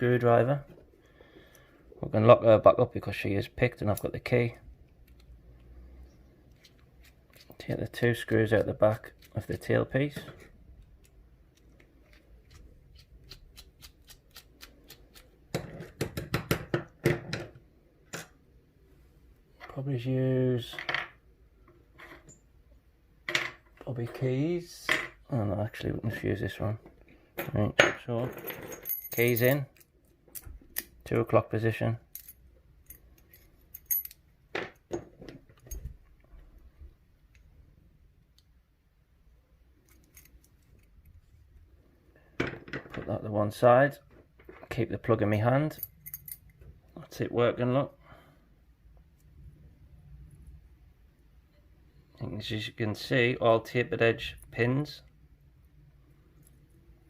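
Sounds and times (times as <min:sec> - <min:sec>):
metallic padlock clicks: 0:39.8 - 0:41.2.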